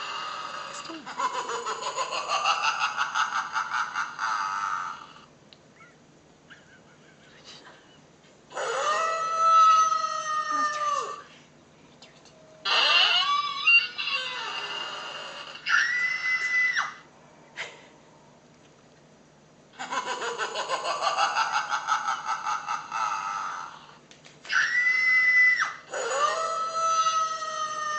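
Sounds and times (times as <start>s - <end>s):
pulsing wavering cry: 8.5s - 11.3s, 12.6s - 17.1s, 22.9s - 27.9s
rising wail: 8.5s - 11.3s, 12.7s - 17.1s, 22.9s - 27.9s
high screams: 8.6s - 11.3s, 12.6s - 17.1s, 23.4s - 27.9s.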